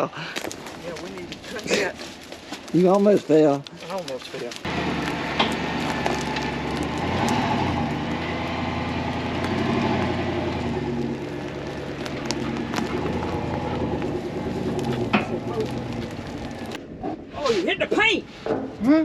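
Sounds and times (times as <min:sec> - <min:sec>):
tractor diesel engine revving: 0:04.6 - 0:16.8.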